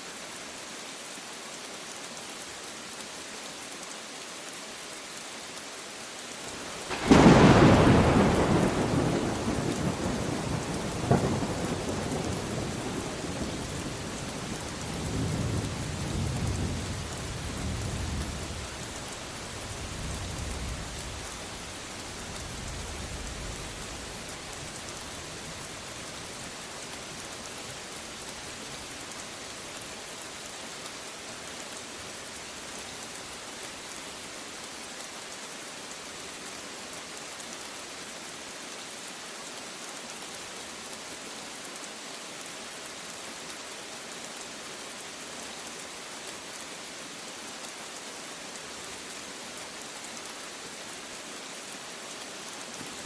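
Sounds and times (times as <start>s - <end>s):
steady rain falling: 0.0s - 53.0s
low thunder rumble: 7.0s - 12.9s.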